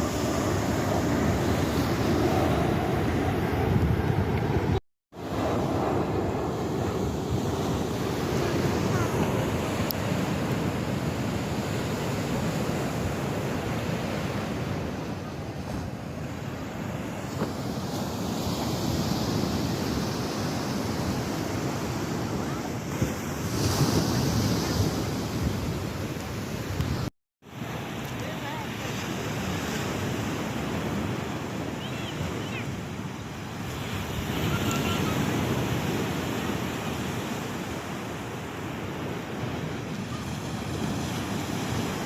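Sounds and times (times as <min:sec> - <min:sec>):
wind buffeting the microphone: 0:00.0 - 0:27.1
sea waves and surf: 0:00.0 - 0:42.0.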